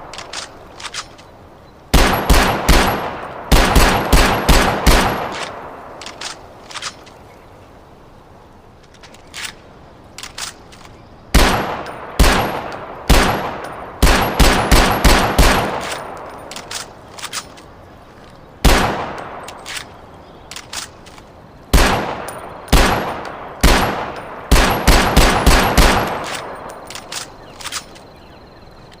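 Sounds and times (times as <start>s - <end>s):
faint clicks: 0.0s - 1.4s, 5.3s - 7.4s, 8.8s - 11.1s, 15.7s - 18.5s, 19.1s - 21.5s, 26.1s - 29.0s
machine pistol gunshots echoing: 1.9s - 6.4s, 11.3s - 17.5s, 18.6s - 20.0s, 21.7s - 27.9s.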